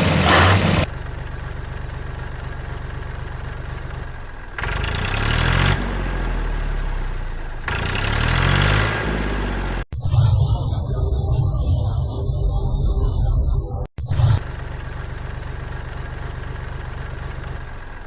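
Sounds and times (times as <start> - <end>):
vehicle engine idling and revving: 0.0 - 9.9, 14.4 - 18.0.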